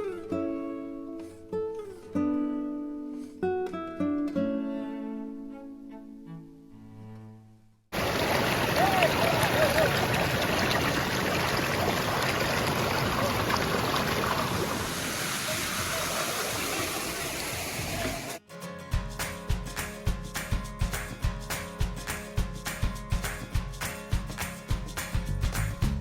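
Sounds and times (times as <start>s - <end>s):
music: 0.0s - 7.8s, 18.4s - 26.0s
faint voices: 8.0s - 18.4s
flowing stream water: 8.0s - 18.4s.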